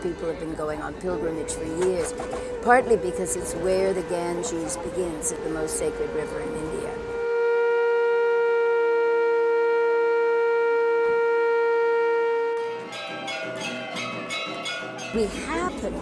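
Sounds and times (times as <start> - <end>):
long wind instrument note: 1.3 - 13.1
music: 12.6 - 16.0.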